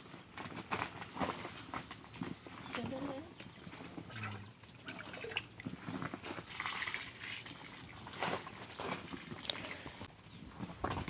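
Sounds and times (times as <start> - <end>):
wet feed sloshing by hand: 4.0 - 10.1.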